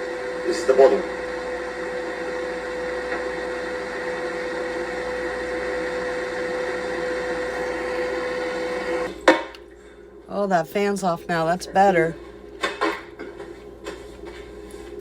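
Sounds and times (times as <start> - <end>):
electric fan running: 0.0 - 15.0.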